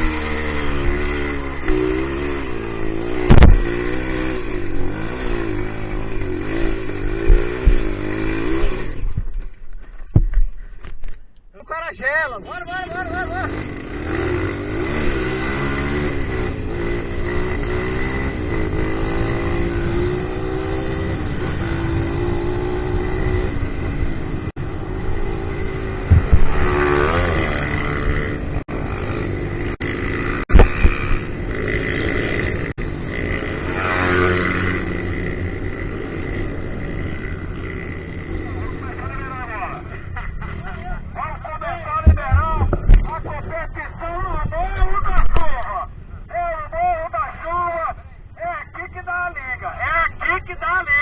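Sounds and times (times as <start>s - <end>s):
motorcycle engine revving: 0.0s - 11.0s, 12.9s - 46.2s
sharp loud knocks: 3.2s - 3.8s, 7.2s - 8.0s, 26.0s - 26.7s, 42.0s - 43.1s.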